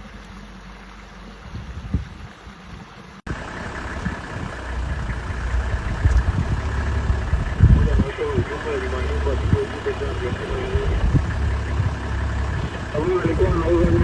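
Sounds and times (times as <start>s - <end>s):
low background noise: 3.3s - 14.0s
vehicle engine idling: 3.3s - 14.0s.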